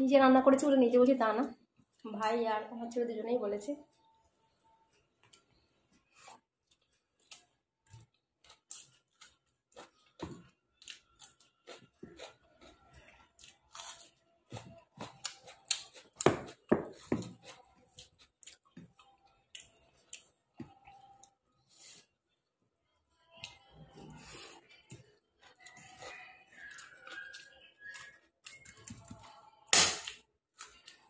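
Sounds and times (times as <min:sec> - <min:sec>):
person chewing and smacking: 0:04.9 - 0:21.4, 0:24.4 - 0:31.0.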